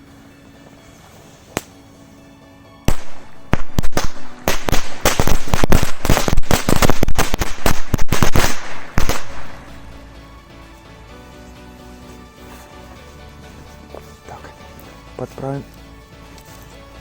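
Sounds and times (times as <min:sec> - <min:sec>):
firecrackers exploding in a fire: 0:02.9 - 0:09.9.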